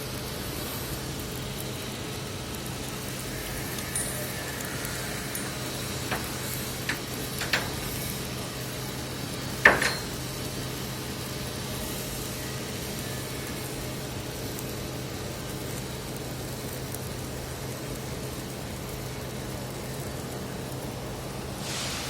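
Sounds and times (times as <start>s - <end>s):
arc welding crackle: 0.0s - 22.0s
metallic clinks: 3.4s - 8.4s, 9.6s - 10.4s.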